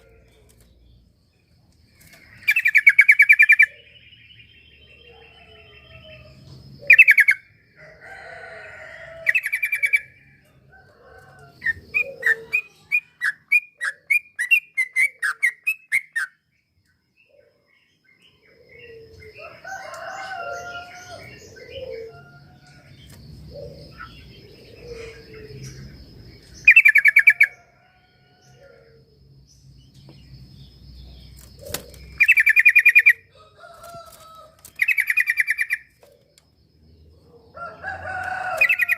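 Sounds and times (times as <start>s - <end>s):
bird song rattling phrases: 0.0s - 28.9s, 29.6s - 38.9s.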